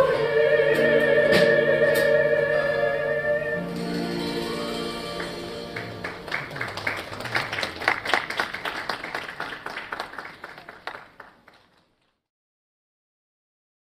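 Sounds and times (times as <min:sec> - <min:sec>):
harp ensemble chord: 0:00.0 - 0:06.3
audience clapping: 0:05.1 - 0:12.2.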